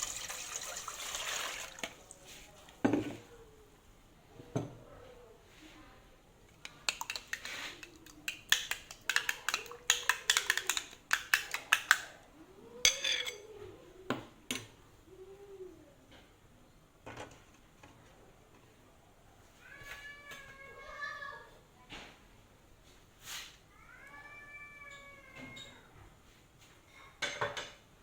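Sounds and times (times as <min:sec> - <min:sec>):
metal utensil tapping a bowl: 0:06.6 - 0:12.1.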